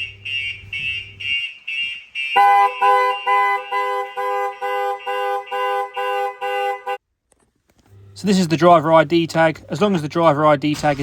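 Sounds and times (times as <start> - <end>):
car alarm siren beeping: 0.0 - 7.0
car horn honking: 0.0 - 7.0.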